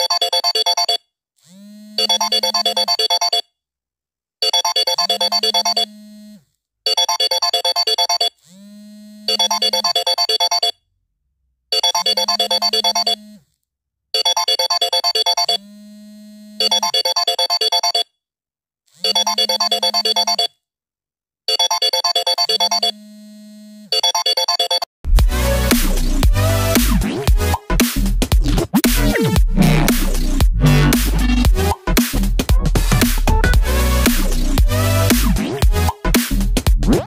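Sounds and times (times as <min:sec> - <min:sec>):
phone ringtone trilling beeps: 0:00.0 - 0:01.1, 0:02.0 - 0:03.5, 0:04.4 - 0:05.9, 0:06.9 - 0:08.4, 0:09.3 - 0:10.8, 0:11.7 - 0:13.2, 0:14.2 - 0:15.6, 0:16.6 - 0:18.1, 0:19.0 - 0:20.6, 0:21.5 - 0:23.0, 0:23.9 - 0:24.9.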